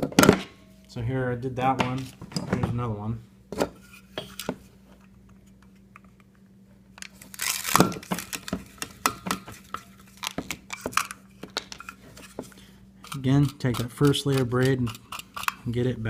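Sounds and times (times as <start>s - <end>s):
tool and cable clicks and rattles: 7.0s - 12.4s, 13.1s - 15.7s.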